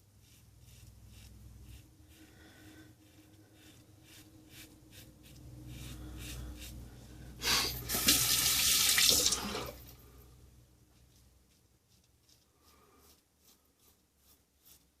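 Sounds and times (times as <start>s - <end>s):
razor scratching stubble: 0.0s - 6.9s, 11.1s - 15.0s
tap running into sink: 7.9s - 9.8s.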